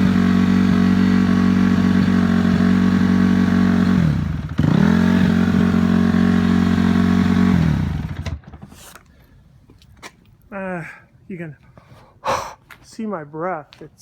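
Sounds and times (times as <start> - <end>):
dirt bike engine idling: 0.0 - 8.4.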